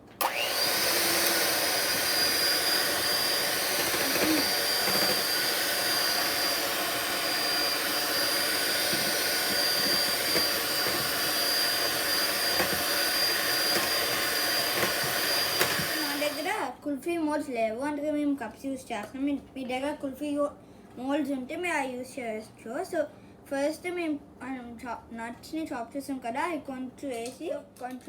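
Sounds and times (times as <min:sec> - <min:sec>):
electric mixer whining: 0:00.0 - 0:16.6.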